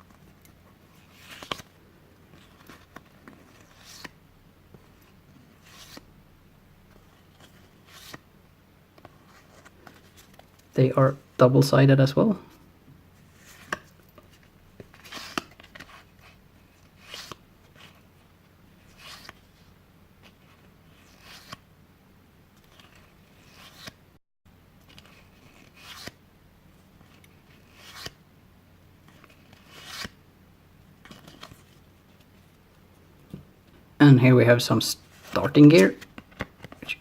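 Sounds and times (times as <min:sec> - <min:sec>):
cards sliding and rustling: 0:00.1 - 0:06.1, 0:06.9 - 0:08.2, 0:09.0 - 0:10.8, 0:13.2 - 0:18.1, 0:18.8 - 0:21.6, 0:22.6 - 0:24.0, 0:24.8 - 0:26.2, 0:27.0 - 0:28.2, 0:29.0 - 0:30.2, 0:31.0 - 0:32.6, 0:35.0 - 0:37.0.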